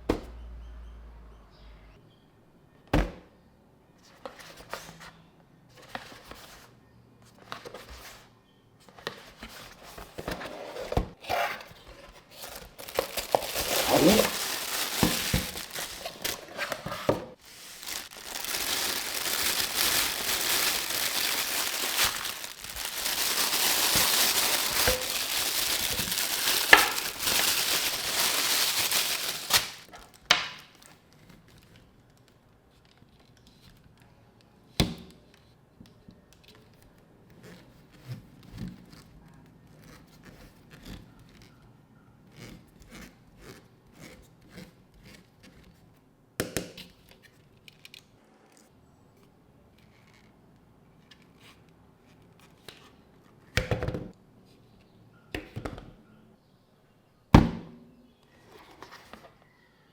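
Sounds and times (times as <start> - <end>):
plastic packaging crinkling and tearing: 12.2 - 31.0.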